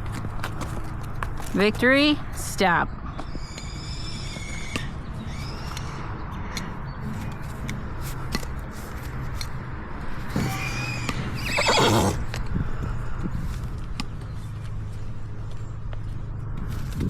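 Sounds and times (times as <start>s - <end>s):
horse whinnying: 10.3s - 12.2s.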